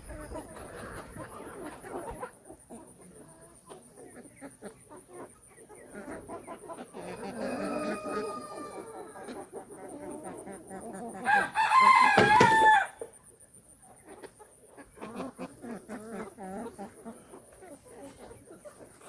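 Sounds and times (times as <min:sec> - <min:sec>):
chickens clucking: 0:00.0 - 0:19.0
rooster crowing: 0:07.2 - 0:09.3, 0:11.2 - 0:13.0.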